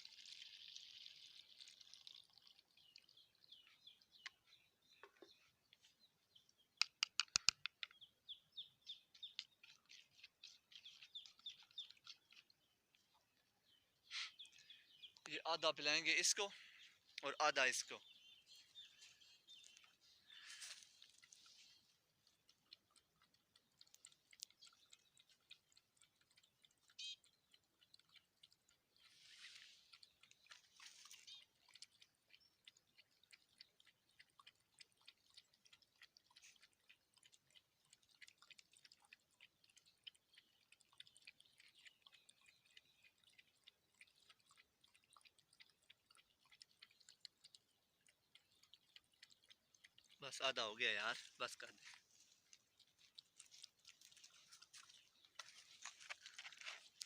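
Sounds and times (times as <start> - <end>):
puppies lapping milk: 0.0 - 57.0
small birds chirping: 0.0 - 57.0
sharp clicks: 6.8 - 7.9.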